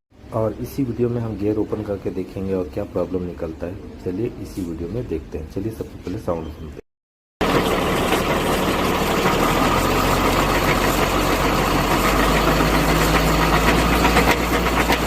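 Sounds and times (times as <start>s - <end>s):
truck engine idling hum: 7.4s - 15.0s
gearbox rapid clatter: 10.5s - 15.0s.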